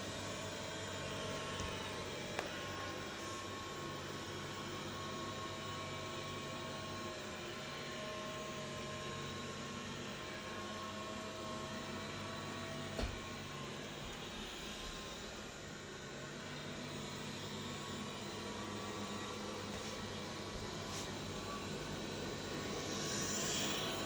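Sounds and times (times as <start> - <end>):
robot vacuum whirring: 7.9 - 24.0.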